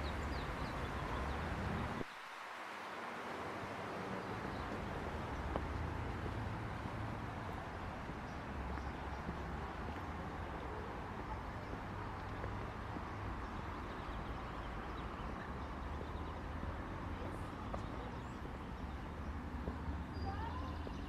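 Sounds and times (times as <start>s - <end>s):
distant traffic hum: 0.0s - 21.0s.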